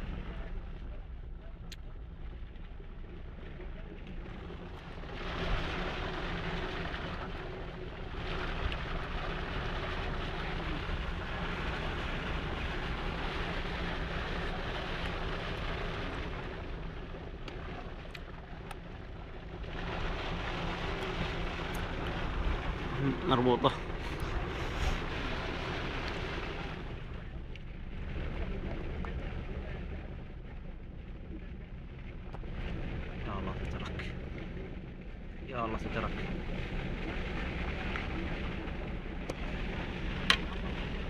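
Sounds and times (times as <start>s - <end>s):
low rumble: 0.0s - 41.0s
running water: 4.2s - 29.1s
rain rushing: 4.7s - 30.5s, 32.4s - 41.0s.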